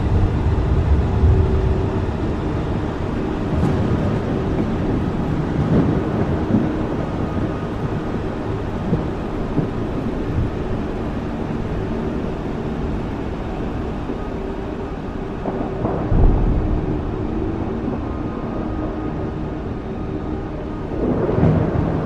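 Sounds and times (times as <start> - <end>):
low rumble: 0.0 - 11.0
rain falling: 0.0 - 22.0.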